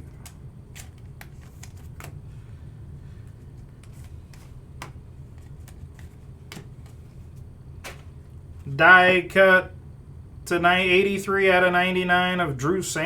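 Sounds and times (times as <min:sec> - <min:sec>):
card and plastic sleeve rustles: 0:00.0 - 0:08.7
trading cards being handled: 0:00.0 - 0:08.8
steady low hum: 0:00.0 - 0:13.0.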